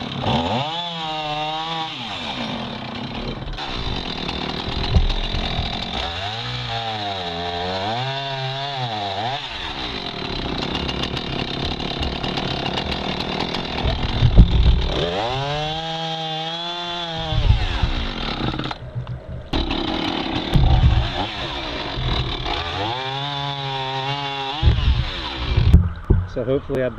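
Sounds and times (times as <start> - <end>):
chainsaw cutting logs: 0.0 - 18.9, 19.5 - 25.9
loud knocks: 13.7 - 15.0, 20.4 - 21.2, 24.6 - 26.4.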